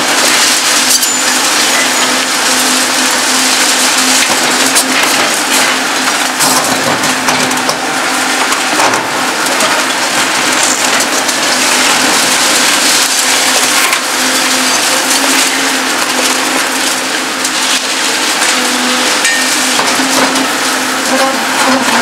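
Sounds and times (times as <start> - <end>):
concrete crushing and cracking: 0.0 - 22.0
excavator hum: 0.0 - 22.0.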